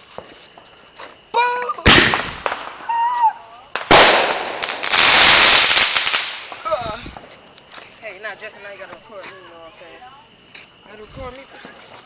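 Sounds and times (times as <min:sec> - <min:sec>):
firecracker bang: 0:01.8 - 0:07.3.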